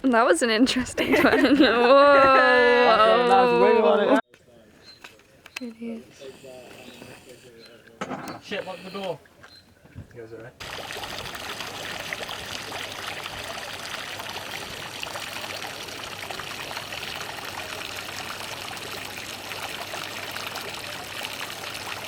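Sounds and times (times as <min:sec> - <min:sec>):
running water trickling: 0:10.2 - 0:22.0.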